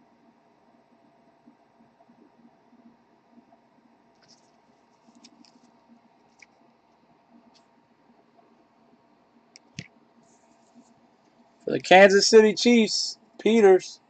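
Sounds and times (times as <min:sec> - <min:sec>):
trading cards scratching and clicking: 0:04.2 - 0:06.6.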